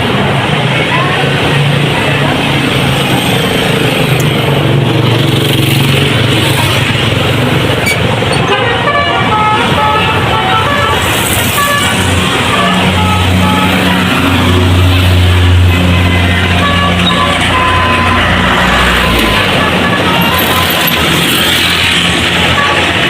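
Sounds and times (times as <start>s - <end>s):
heavy engine hum: 0.0s - 23.0s
road traffic: 0.0s - 23.0s
bus horn playing a tune: 8.3s - 23.0s.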